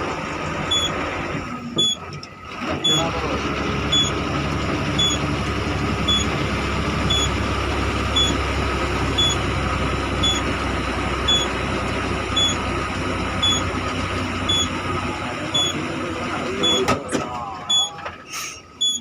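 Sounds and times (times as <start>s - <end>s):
vehicle engine idling: 0.0s - 19.0s
high electronic warning beep: 0.7s - 1.0s, 1.8s - 2.0s, 2.8s - 3.1s, 3.9s - 4.2s, 5.0s - 5.2s, 6.0s - 6.4s, 7.1s - 7.4s, 8.2s - 8.4s, 9.2s - 9.4s, 10.2s - 10.5s, 11.3s - 11.6s, 12.4s - 12.6s, 13.4s - 13.7s, 14.5s - 14.8s, 15.5s - 15.8s, 16.6s - 16.9s, 17.7s - 18.0s, 18.8s - 19.0s.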